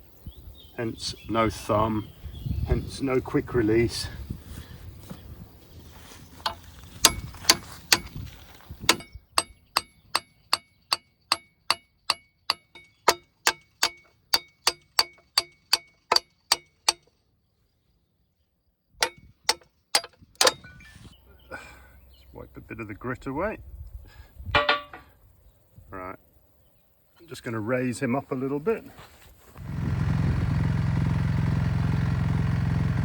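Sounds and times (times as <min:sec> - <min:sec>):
hammer striking metal pin: 0:06.4 - 0:08.2, 0:08.9 - 0:17.1, 0:19.0 - 0:20.8, 0:24.6 - 0:25.1.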